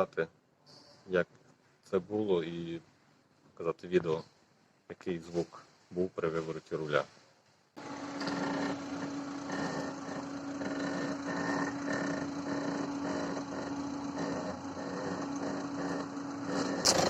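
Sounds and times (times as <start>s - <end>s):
suspension creaking: 7.8s - 17.0s.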